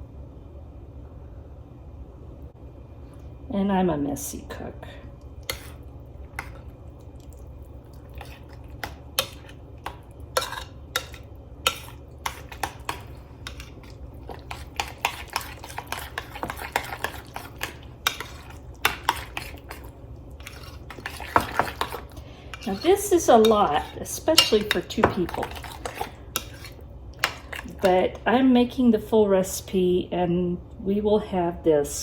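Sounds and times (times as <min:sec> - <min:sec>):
utensil stirring in a bowl: 0:05.2 - 0:28.3.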